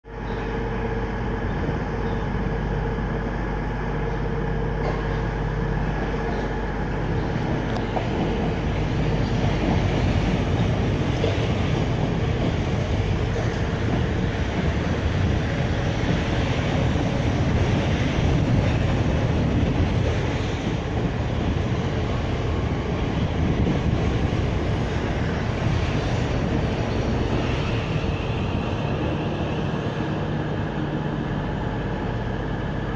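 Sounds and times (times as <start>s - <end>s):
steady train whine: 0.0s - 32.9s
train wheels rumbling on rails: 0.0s - 32.9s.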